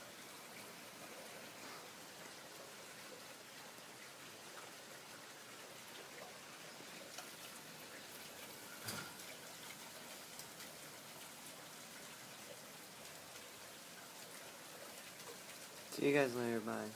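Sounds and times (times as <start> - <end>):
heavy rain falling: 0.0 - 16.9.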